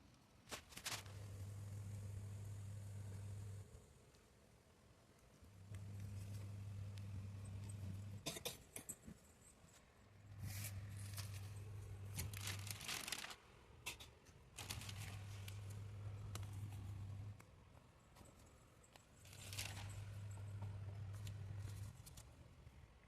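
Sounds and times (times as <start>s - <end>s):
crinkly rustling: 0.4s - 1.6s, 9.7s - 17.4s, 18.2s - 22.3s
washing machine motor humming: 1.1s - 3.8s, 5.5s - 8.2s, 10.3s - 12.9s, 14.6s - 17.4s.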